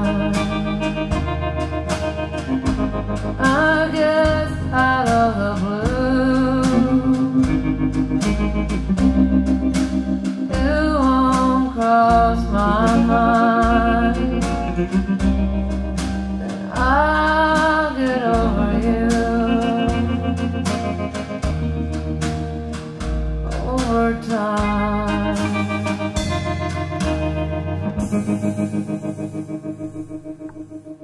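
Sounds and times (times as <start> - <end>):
person singing: 0.0 - 1.0, 3.4 - 7.7, 10.5 - 15.2, 16.4 - 20.6, 23.4 - 26.1
steady drum beat: 0.0 - 30.6
bass line: 0.0 - 31.0
pop jazz song from vinyl: 0.0 - 31.0.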